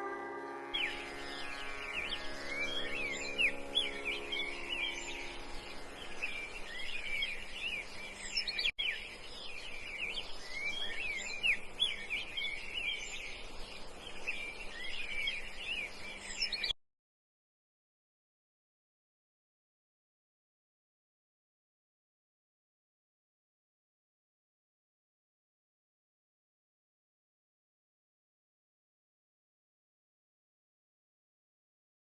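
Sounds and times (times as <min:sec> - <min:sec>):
held music chord: 0:00.0 - 0:07.5
small birds chirping: 0:00.6 - 0:16.8.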